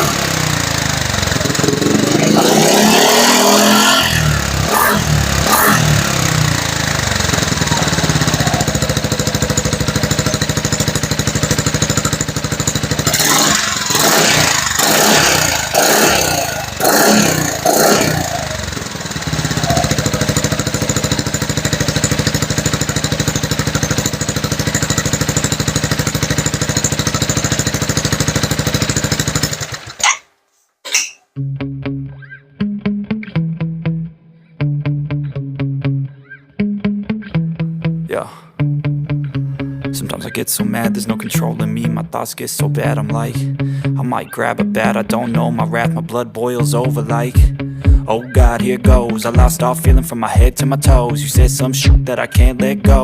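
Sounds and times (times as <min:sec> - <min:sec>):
motorbike engine idling: 0:00.0 - 0:30.1, 0:47.0 - 0:53.0.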